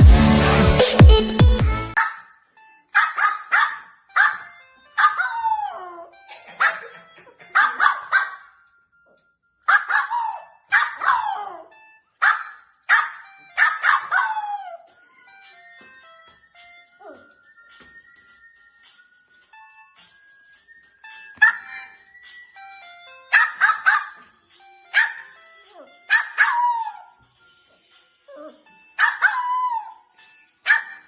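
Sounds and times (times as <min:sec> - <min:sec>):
loud electronic music: 0:00.0 - 0:02.0
puppy barking and yowling: 0:03.0 - 0:08.5, 0:09.7 - 0:14.9, 0:21.4 - 0:21.8, 0:23.3 - 0:24.2, 0:24.9 - 0:25.4, 0:26.1 - 0:27.1, 0:28.4 - 0:31.0.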